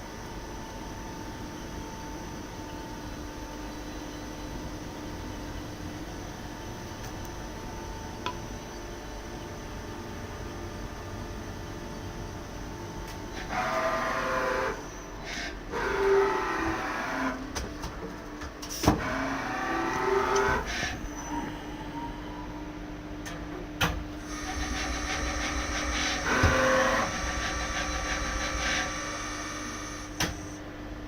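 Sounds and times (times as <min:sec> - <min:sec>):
steady hum: 0:20.3 - 0:31.0
lathe motor whining: 0:24.2 - 0:30.6.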